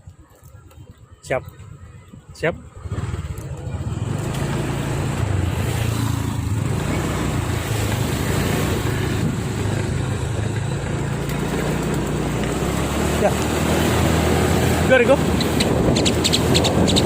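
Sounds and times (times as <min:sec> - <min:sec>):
motorcycle engine running: 0:02.6 - 0:17.0
wind rushing on microphone: 0:13.6 - 0:17.0.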